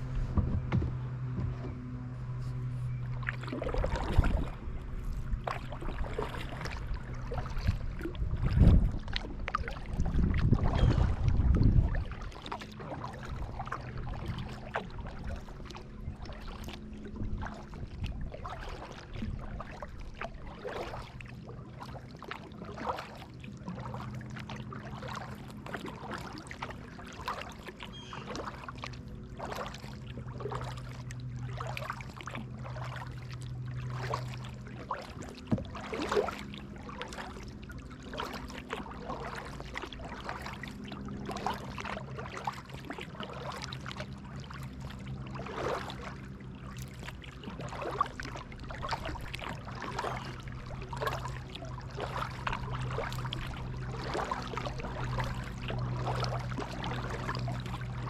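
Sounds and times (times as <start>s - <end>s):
low bumps: 0.0s - 6.0s
paddle splashing in water: 0.0s - 58.0s.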